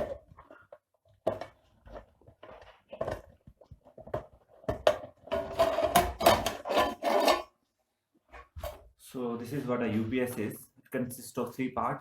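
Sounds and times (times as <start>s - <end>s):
metallic clattering and scraping: 5.2s - 7.6s.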